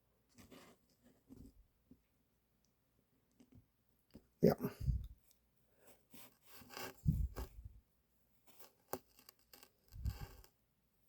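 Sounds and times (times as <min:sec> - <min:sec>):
revolver handling rubbing and scraping: 0:08.5 - 0:10.5.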